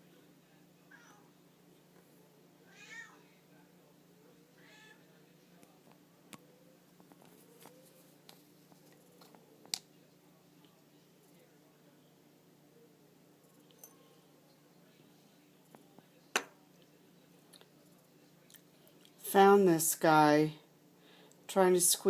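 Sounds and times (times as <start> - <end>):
faint cat meows: 0.9 - 1.3, 2.6 - 3.3, 4.6 - 5.1.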